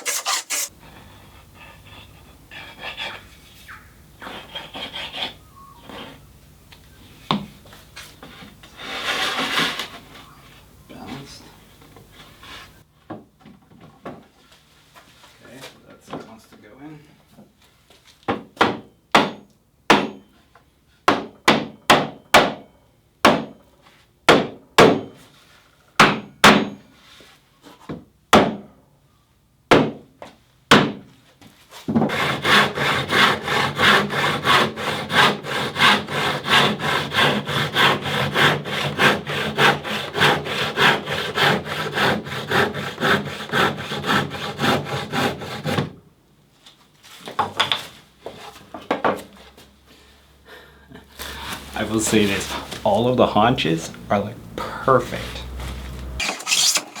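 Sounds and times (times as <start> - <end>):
hand saw cutting wood: 0.0 - 0.7, 8.6 - 10.0, 32.1 - 45.9, 56.2 - 57.0.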